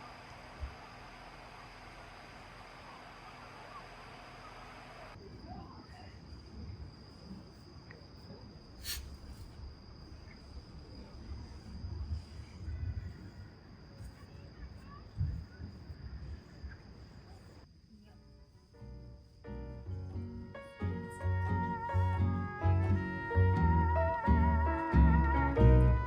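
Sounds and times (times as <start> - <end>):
crickets trilling: 0.0 - 21.9
background hiss: 6.2 - 25.9.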